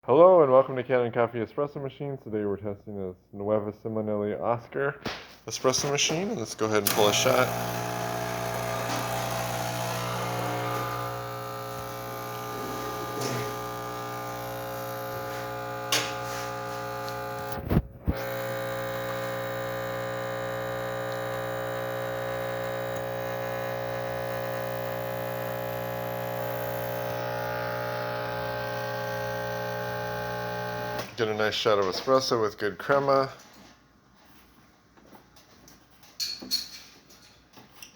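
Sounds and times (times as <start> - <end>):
espresso pump buzzing: 6.6 - 31.1.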